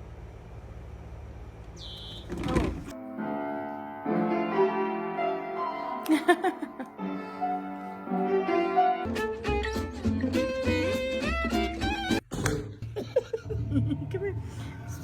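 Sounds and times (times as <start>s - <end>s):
music with held keyboard notes: 3.0s - 6.1s, 7.0s - 12.2s.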